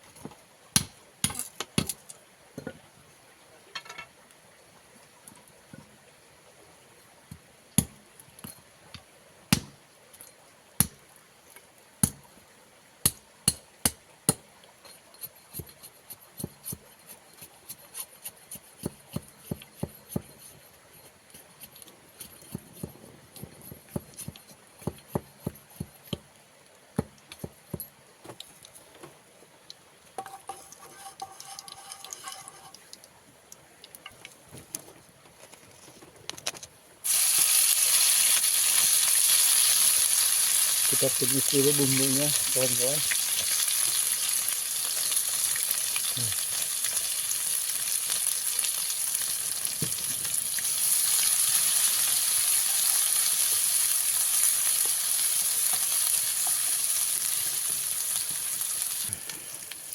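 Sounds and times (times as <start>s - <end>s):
kitchen utensils clinking: 30.2s - 32.8s.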